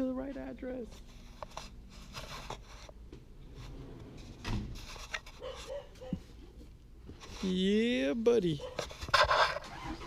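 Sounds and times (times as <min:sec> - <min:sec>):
rubbing and scraping: 0:00.9 - 0:06.2, 0:07.1 - 0:07.8, 0:08.6 - 0:10.0.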